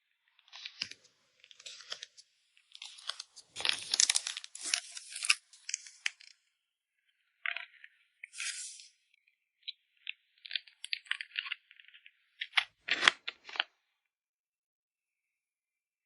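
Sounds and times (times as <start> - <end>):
plastic packaging crinkling: 2.7 - 6.4.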